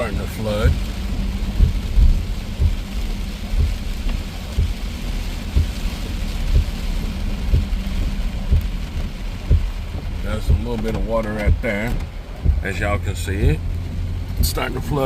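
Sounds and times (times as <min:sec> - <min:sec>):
car rumbling on wet road: 0:00.0 - 0:15.0
heavy rain on a car: 0:00.0 - 0:15.0
dull thumps: 0:08.5 - 0:12.7.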